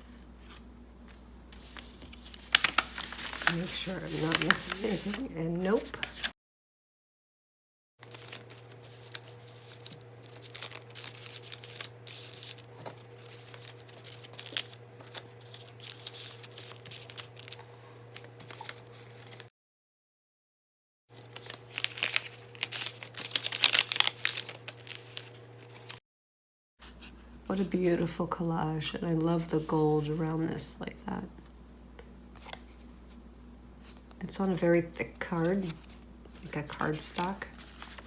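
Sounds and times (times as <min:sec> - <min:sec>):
paper rustling and crinkling: 0:00.0 - 0:06.3, 0:08.0 - 0:19.5, 0:21.2 - 0:26.0, 0:35.4 - 0:38.0.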